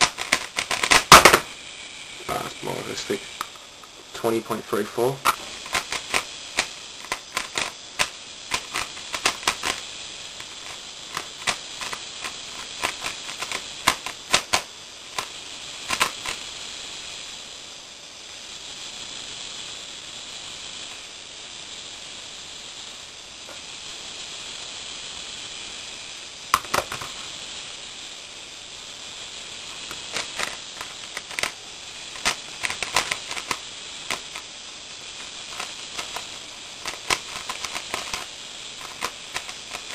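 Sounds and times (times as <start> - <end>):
puzzle cube plastic clicks: 0.0 - 1.5, 5.2 - 9.8, 10.4 - 16.4, 29.8 - 34.4, 35.2 - 39.9.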